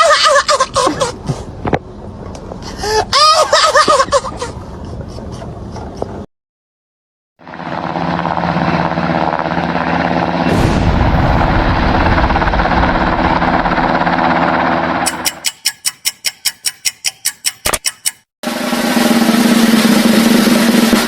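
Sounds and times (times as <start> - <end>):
heavy engine droning: 7.4 - 15.1
deep rumble with whoosh: 10.1 - 15.0.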